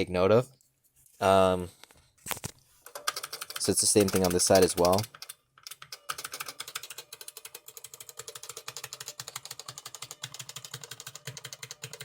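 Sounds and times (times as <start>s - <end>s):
mechanical keyboard clicking: 2.9s - 12.0s.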